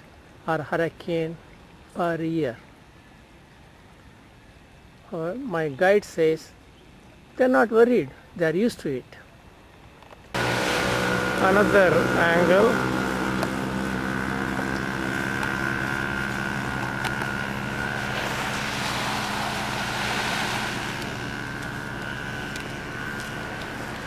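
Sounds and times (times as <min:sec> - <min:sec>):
vehicle engine and road noise: 0:09.9 - 0:24.0.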